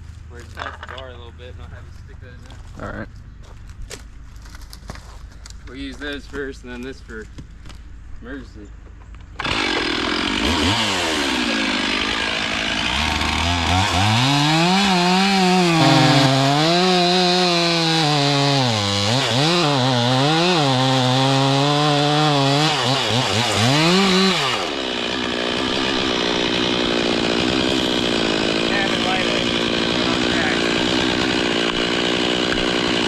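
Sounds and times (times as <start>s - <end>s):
chainsaw cutting wood: 9.4s - 33.0s.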